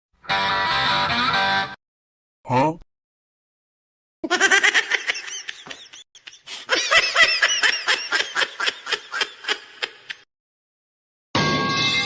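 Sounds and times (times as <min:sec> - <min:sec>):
person laughing hard: 0:04.2 - 0:10.2.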